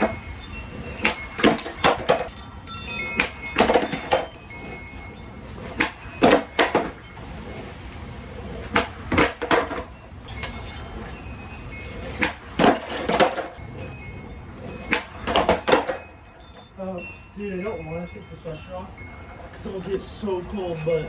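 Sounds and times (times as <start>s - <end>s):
skateboard clacks and clatter: 0.0s - 16.4s.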